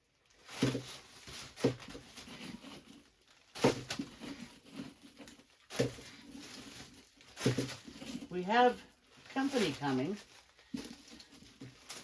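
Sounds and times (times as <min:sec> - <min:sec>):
shuffling and rustling: 0:00.2 - 0:12.0
potatoes knocking: 0:00.4 - 0:08.8.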